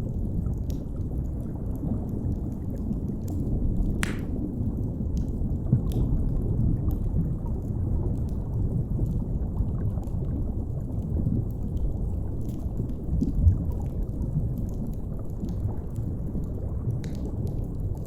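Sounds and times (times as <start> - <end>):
wood fire crackling: 3.3 - 4.6.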